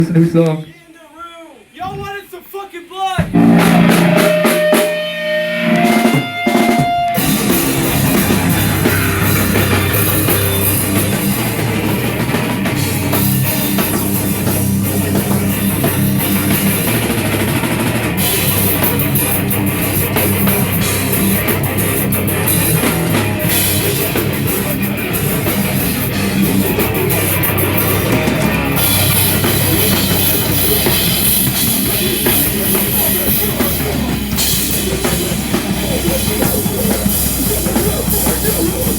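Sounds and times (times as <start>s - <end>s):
heavy rock band playing: 3.2s - 38.9s
ringing guitar notes: 3.3s - 11.7s.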